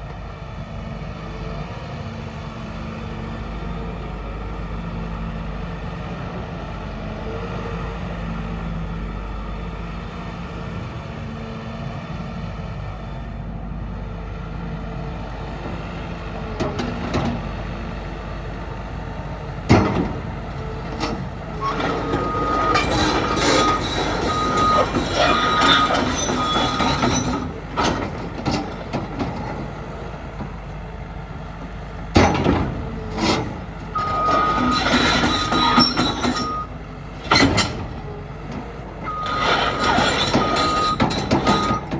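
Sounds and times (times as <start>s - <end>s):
excavator diesel engine running: 0.0s - 41.9s
metallic knocks and clanking: 15.7s - 17.7s, 19.6s - 30.7s, 31.6s - 41.9s.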